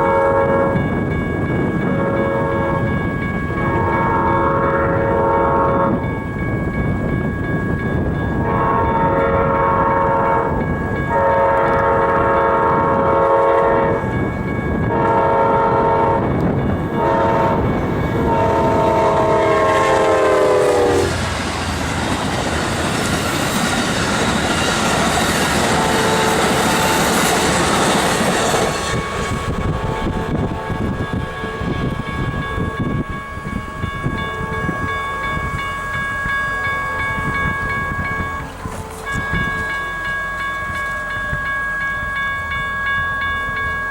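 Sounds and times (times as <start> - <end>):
locomotive horn blasts: 0.0 - 0.9, 1.9 - 3.0, 3.6 - 6.0, 8.4 - 14.2, 14.8 - 21.2, 25.6 - 27.3, 32.4 - 41.5
train cars rushing past: 0.0 - 43.9.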